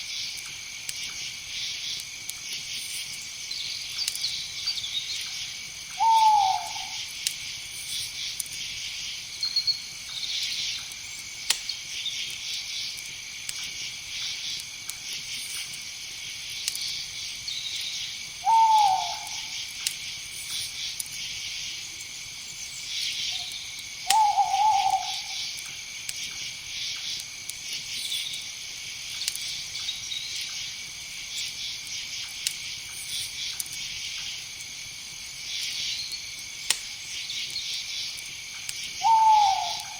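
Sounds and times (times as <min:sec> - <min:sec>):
crickets and insects chirping: 0:00.0 - 0:39.9
owl calling: 0:06.0 - 0:07.0, 0:18.4 - 0:19.6, 0:23.3 - 0:25.5, 0:39.0 - 0:39.9.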